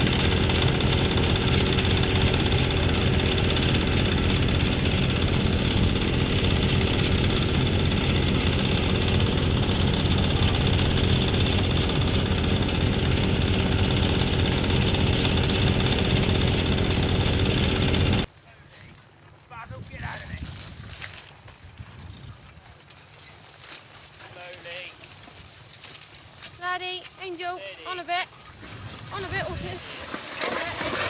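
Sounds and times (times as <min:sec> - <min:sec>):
engine idling drone: 0:00.0 - 0:18.3.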